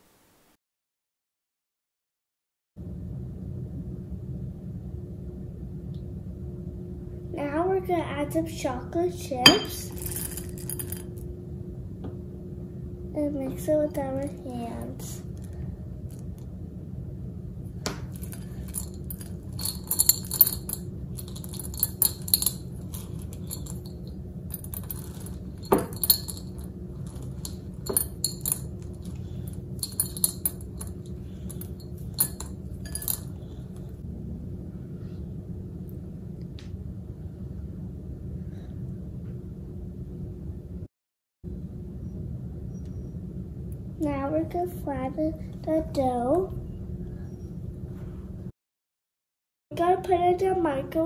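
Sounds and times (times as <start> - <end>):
steady low hum: 2.8 - 40.9, 41.5 - 48.5
spoon clinking against bowl: 9.5 - 10.0.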